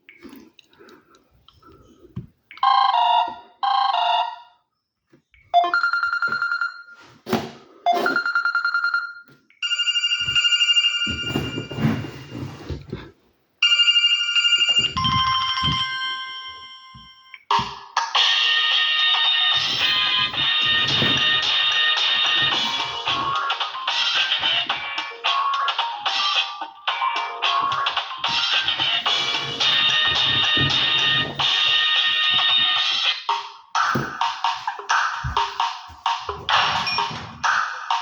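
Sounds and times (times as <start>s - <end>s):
phone ringtones and alert tones: 2.6s - 4.6s, 5.5s - 7.0s, 7.9s - 12.4s, 13.6s - 17.1s.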